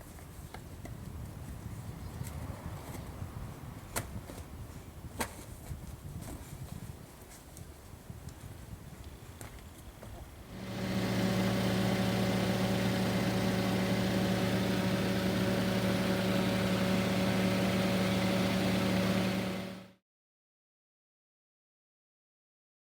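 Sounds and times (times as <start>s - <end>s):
car engine idling: 10.5s - 19.9s.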